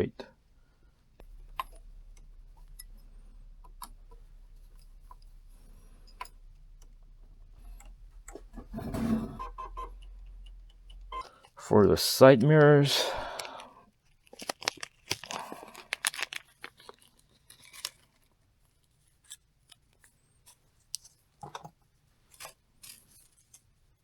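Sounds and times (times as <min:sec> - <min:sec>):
tape backing crinkling: 0:13.2 - 0:18.2.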